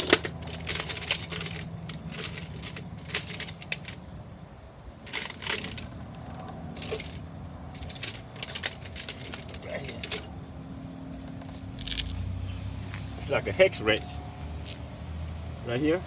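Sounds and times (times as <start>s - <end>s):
metal hand tools clinking: 0.0s - 4.1s, 5.0s - 10.4s, 13.2s - 14.2s.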